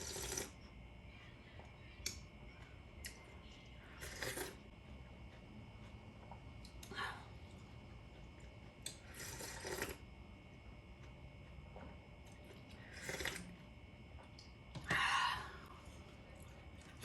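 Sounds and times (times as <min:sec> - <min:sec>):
person eating: 0:00.0 - 0:00.7, 0:03.9 - 0:04.7, 0:06.3 - 0:10.2, 0:12.2 - 0:13.7
low steady hum: 0:00.0 - 0:17.0.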